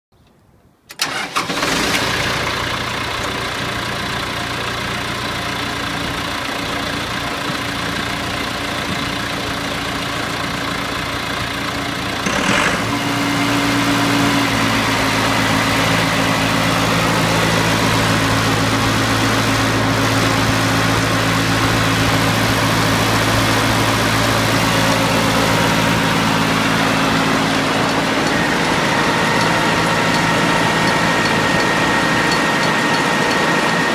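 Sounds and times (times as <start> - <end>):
wood chipper running: 1.0 - 33.9.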